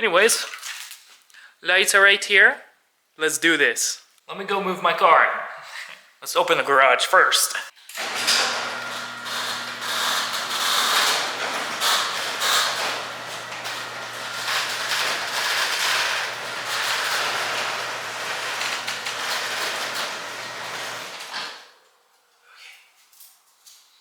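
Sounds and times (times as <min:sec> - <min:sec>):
garage door rattling in tracks: 0:08.0 - 0:21.8
garage door motor hum: 0:08.0 - 0:22.1.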